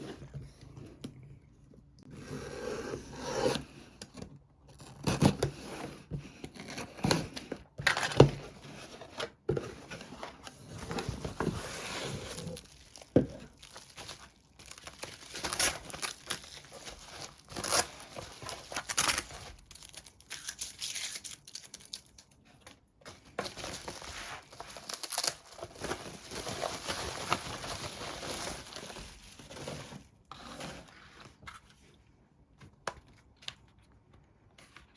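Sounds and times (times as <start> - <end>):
packaging tearing and crinkling: 11.8 - 22.3, 23.5 - 29.6.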